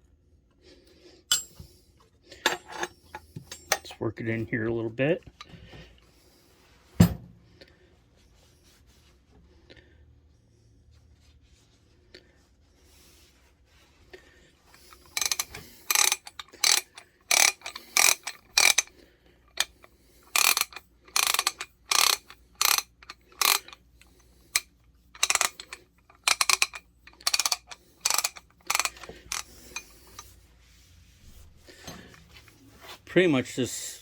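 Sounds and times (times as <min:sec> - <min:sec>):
ratchet pawl clicking: 0:14.8 - 0:18.9, 0:19.5 - 0:30.3.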